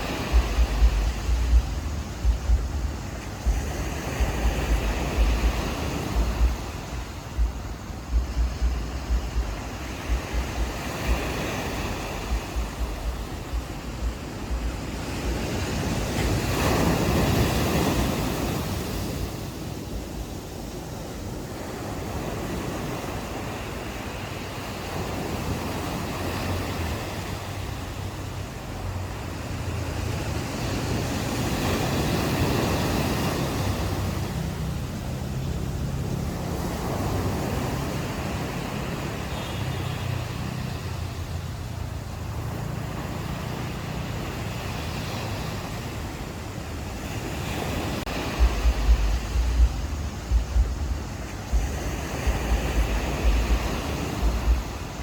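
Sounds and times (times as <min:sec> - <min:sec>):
ocean waves washing onto beach: 0:00.0 - 0:55.0
wind buffeting microphone: 0:00.0 - 0:55.0
low rumble: 0:00.4 - 0:03.8, 0:48.3 - 0:54.8.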